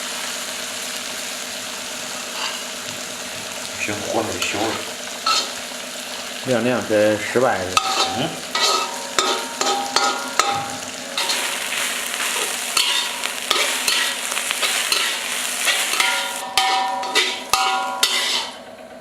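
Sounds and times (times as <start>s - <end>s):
food sizzling in a frying pan: 0.0s - 18.8s
metal spatula scraping a pan: 2.3s - 2.6s, 4.4s - 5.6s, 7.8s - 18.7s.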